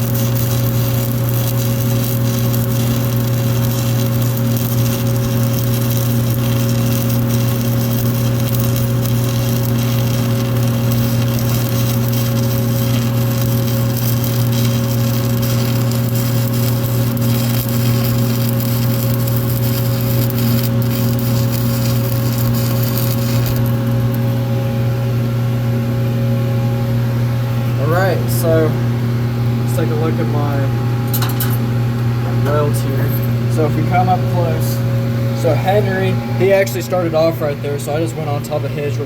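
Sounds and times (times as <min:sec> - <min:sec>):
welding arc crackling: 0:00.0 - 0:24.4
constant low hum: 0:00.0 - 0:39.0.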